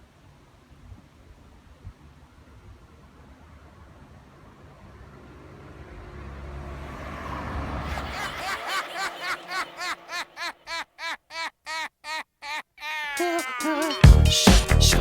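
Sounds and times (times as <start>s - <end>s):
low rumbling noise: 3.6s - 10.1s
intro music: 4.5s - 10.6s.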